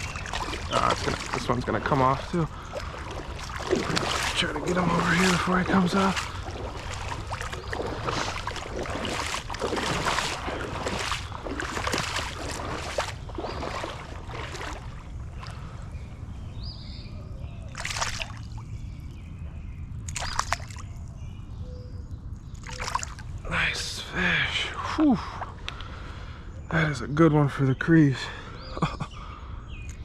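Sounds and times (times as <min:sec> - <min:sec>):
fish thrashing and splashing: 0:00.0 - 0:15.6, 0:17.7 - 0:18.6, 0:20.1 - 0:20.8, 0:22.6 - 0:23.3
creek water rushing: 0:00.0 - 0:15.9.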